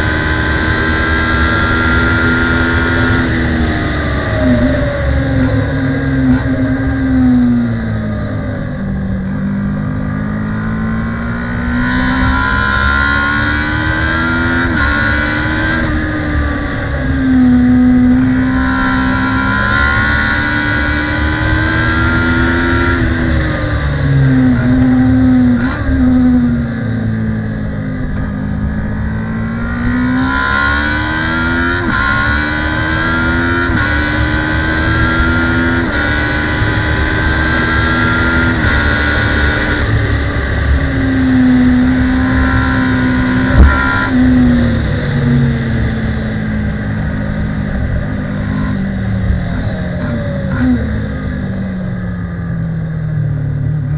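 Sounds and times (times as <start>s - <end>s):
race bike engine revving: 0.0s - 8.6s, 9.2s - 52.1s.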